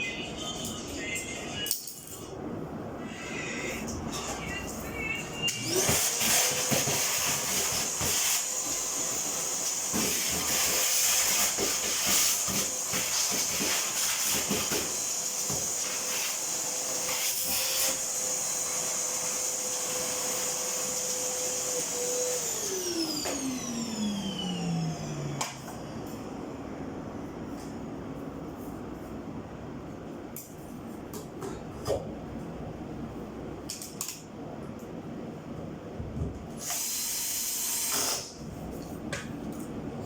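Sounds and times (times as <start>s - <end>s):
clothes dryer whine and hiss: 0.0s - 40.0s.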